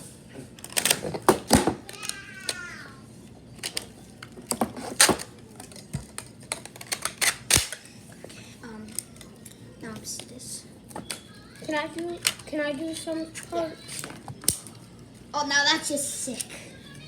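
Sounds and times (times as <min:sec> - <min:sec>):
plastic parts clicking: 0:03.6 - 0:07.8, 0:13.9 - 0:14.8.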